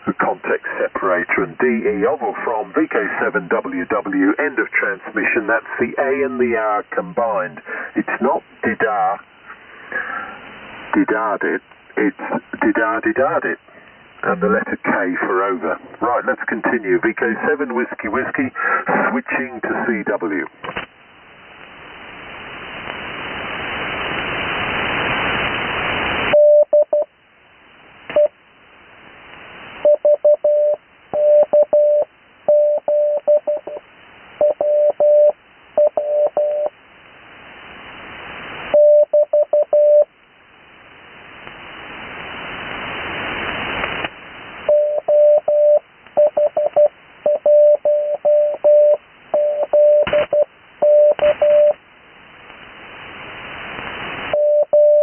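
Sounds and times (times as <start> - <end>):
radio hiss: 0.0 - 55.0
morse code beeps: 26.4 - 27.1, 29.8 - 33.8, 34.4 - 36.7, 38.8 - 40.1, 44.7 - 51.8, 54.4 - 55.0.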